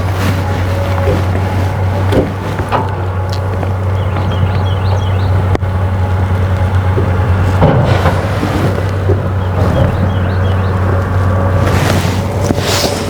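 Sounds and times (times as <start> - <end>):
faint clicks and knocks: 0.0 - 5.7
low engine drone: 0.0 - 13.0.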